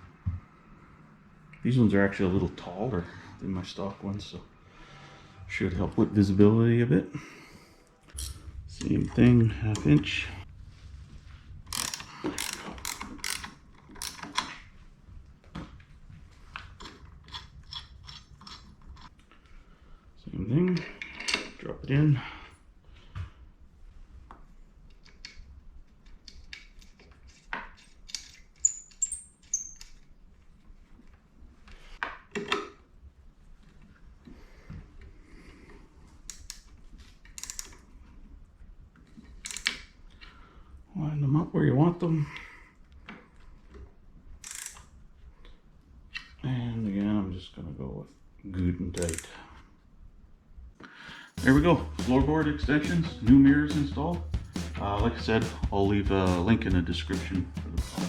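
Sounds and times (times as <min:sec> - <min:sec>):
ratcheting wrench clicking: 0:11.7 - 0:14.5, 0:37.3 - 0:37.8, 0:44.4 - 0:44.9
small metal parts clicking: 0:11.7 - 0:14.5, 0:16.8 - 0:19.1, 0:26.0 - 0:30.1, 0:37.2 - 0:37.8, 0:39.4 - 0:39.9, 0:44.4 - 0:44.9.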